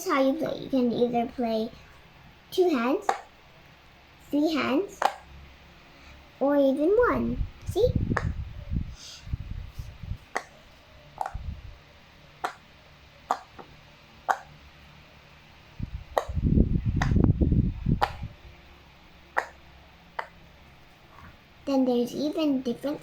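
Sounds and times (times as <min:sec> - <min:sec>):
pop-it toy bubbles popping: 0:05.0 - 0:05.2, 0:10.3 - 0:10.5, 0:13.3 - 0:13.7, 0:16.2 - 0:16.4, 0:19.4 - 0:19.6, 0:20.2 - 0:20.4.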